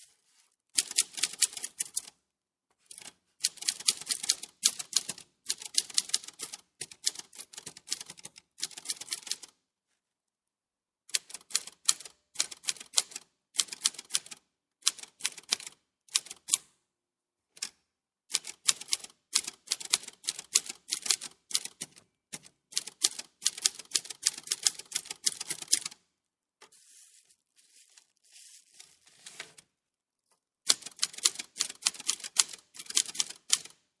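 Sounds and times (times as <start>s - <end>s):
typewriter keys clicking: 0.8s - 2.1s, 3.0s - 9.5s, 11.1s - 16.6s, 18.3s - 26.0s, 30.7s - 33.8s.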